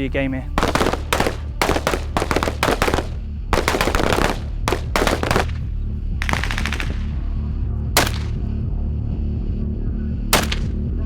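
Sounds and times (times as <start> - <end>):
background music with bass: 0.0 - 11.0
automatic gunfire bursts: 0.6 - 7.1.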